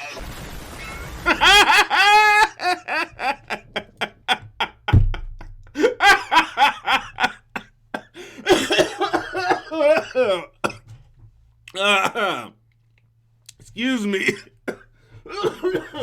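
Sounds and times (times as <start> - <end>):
person laughing hard: 1.2 - 10.5, 15.3 - 16.0
low thump: 4.4 - 5.8.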